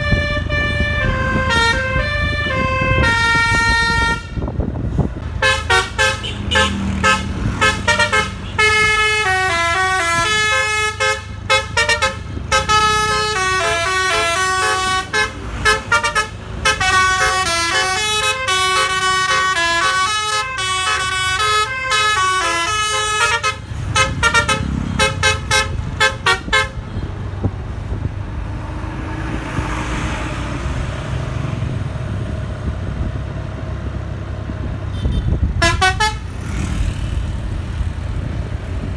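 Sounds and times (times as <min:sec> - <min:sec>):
bus horn playing fast tune: 0:00.0 - 0:04.6, 0:05.2 - 0:27.1, 0:34.9 - 0:36.5
bus engine: 0:00.0 - 0:38.9.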